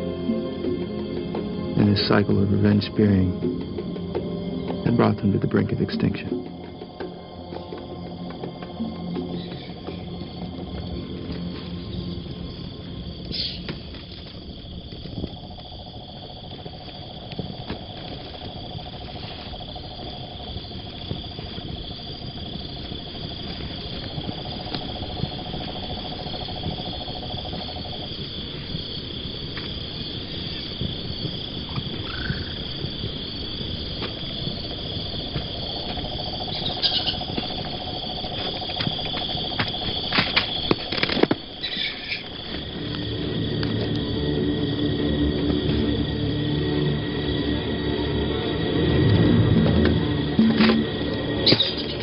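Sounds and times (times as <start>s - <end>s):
insects chirring: 0.0s - 52.0s
low droning trill: 42.7s - 52.0s.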